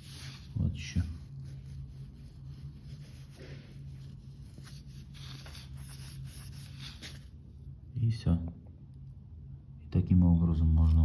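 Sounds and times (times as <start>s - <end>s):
eraser rubbing against wall: 0.0s - 0.6s, 1.2s - 7.4s
steady low hum: 0.0s - 11.0s.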